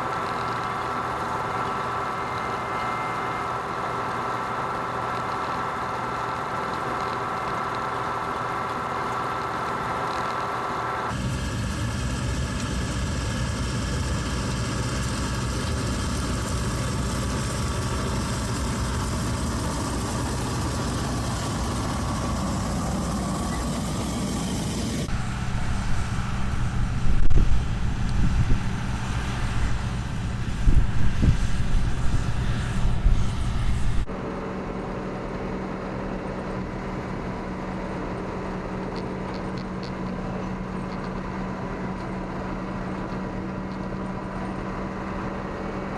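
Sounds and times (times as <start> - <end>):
diesel engine running: 11.1 - 34.1.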